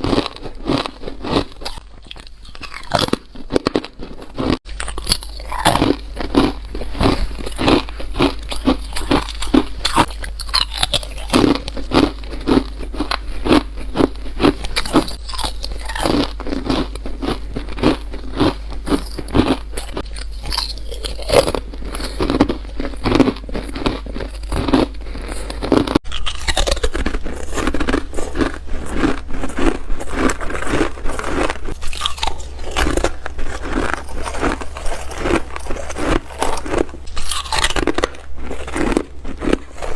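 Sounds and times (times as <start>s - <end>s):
ice being bitten and crunched: 0.0s - 39.9s
steady low hum: 0.0s - 39.9s.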